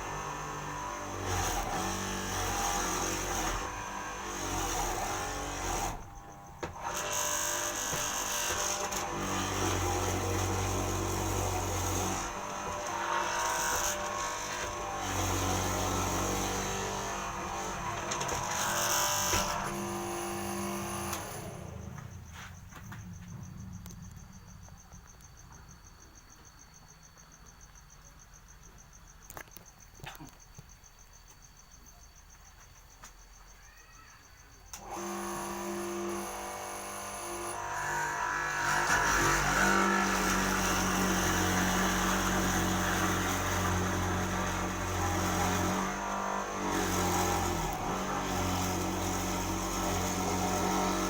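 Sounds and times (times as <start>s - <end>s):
electric motor cutting wood: 0.0s - 23.0s, 34.7s - 51.0s
insect trilling: 33.0s - 34.7s.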